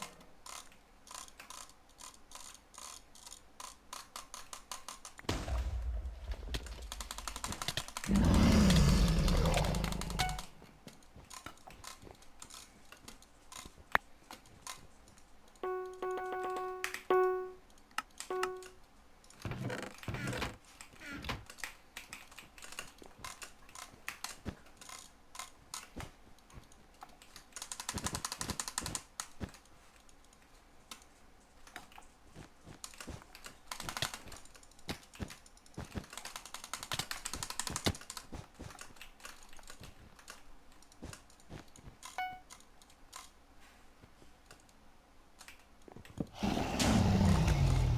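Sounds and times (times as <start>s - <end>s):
keyboard keys clicking: 15.5s - 18.8s.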